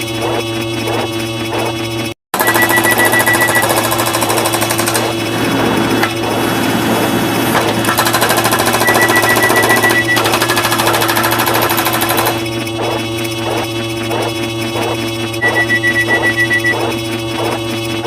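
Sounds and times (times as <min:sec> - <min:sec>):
high beeping tone: 0:02.4 - 0:03.9, 0:08.7 - 0:10.4, 0:15.4 - 0:17.0
cartoon sound effects clatter: 0:02.4 - 0:05.2, 0:07.6 - 0:18.0
steady alarm tones: 0:02.4 - 0:06.6, 0:08.0 - 0:11.0, 0:12.1 - 0:18.0.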